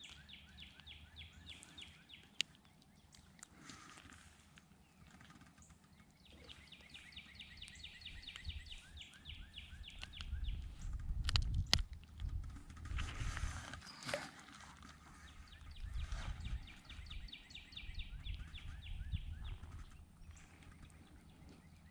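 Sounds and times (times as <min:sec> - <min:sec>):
songbird trilling: 0:06.2 - 0:10.8, 0:15.1 - 0:21.8
sharp clicks: 0:09.7 - 0:12.8.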